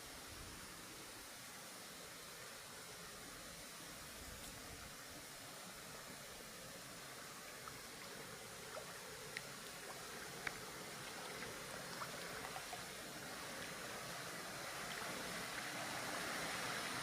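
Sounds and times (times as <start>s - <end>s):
stream water rushing: 0.0s - 17.0s
faint sharp clicks: 8.7s - 10.7s.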